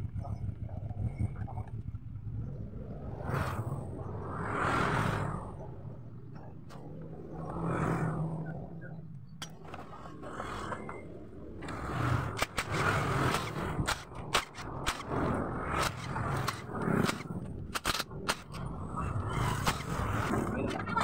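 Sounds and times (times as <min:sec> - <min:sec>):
tools clicking and knocking on metal: 0:12.4 - 0:15.2, 0:15.8 - 0:18.6.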